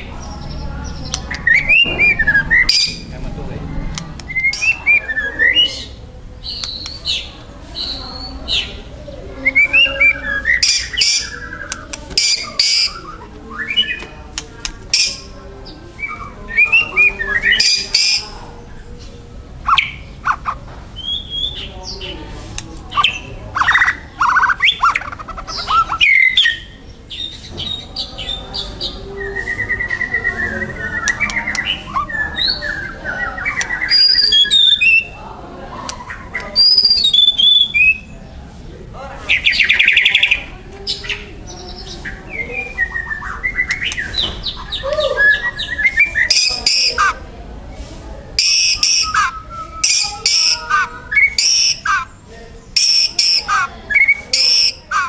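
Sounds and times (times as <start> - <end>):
harsh rattling chatter: 0.0 - 55.0
bird singing whistles and chirps: 4.2 - 7.2, 48.4 - 52.0.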